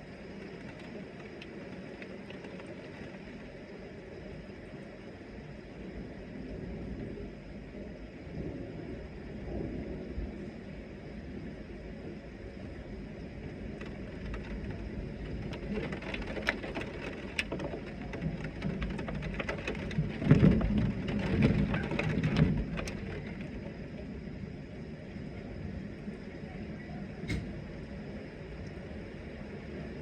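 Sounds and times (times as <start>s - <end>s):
low thunder rumble: 5.5s - 30.0s
heavy rain: 13.5s - 24.3s
drops ticking on hard surface: 13.8s - 23.5s.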